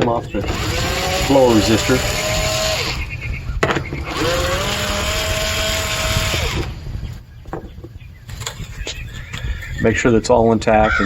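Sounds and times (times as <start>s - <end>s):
power driver motor whine: 0.0s - 7.2s.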